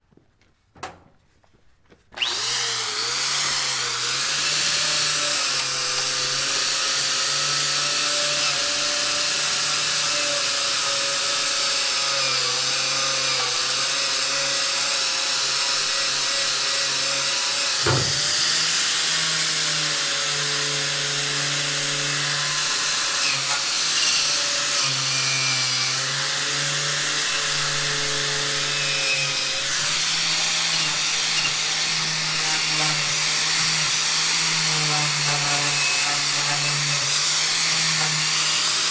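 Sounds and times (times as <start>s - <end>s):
angle grinder grinding metal: 2.2s - 38.9s
sharp knock: 17.8s - 18.6s.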